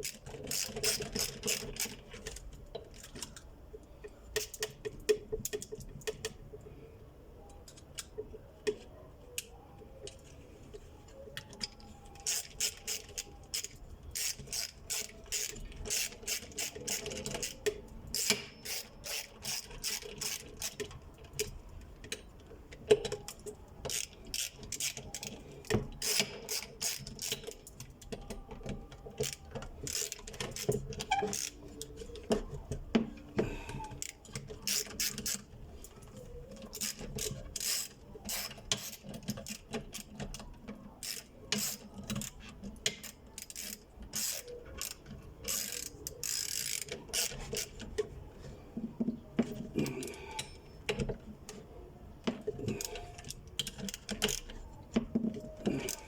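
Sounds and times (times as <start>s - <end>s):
clicks and clinks of metal parts: 0.0s - 6.4s, 7.6s - 32.5s, 33.1s - 48.2s, 49.4s - 51.6s.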